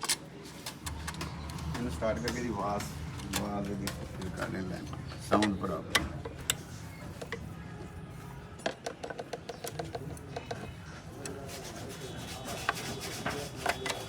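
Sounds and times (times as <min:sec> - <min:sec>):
light engine ticks and rattles: 0:00.0 - 0:07.4.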